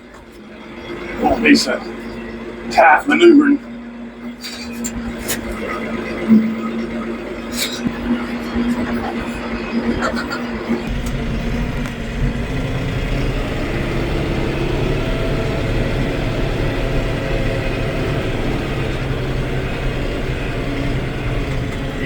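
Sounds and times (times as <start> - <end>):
tractor engine running: 0.0 - 22.0.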